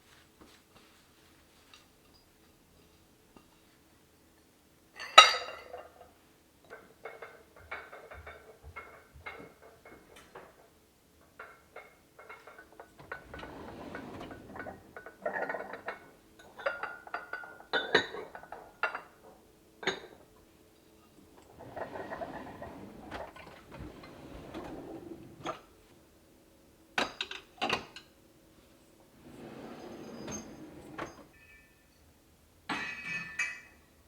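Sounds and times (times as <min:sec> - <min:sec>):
dishes and glassware clinking: 0:29.3 - 0:31.8, 0:32.7 - 0:33.8.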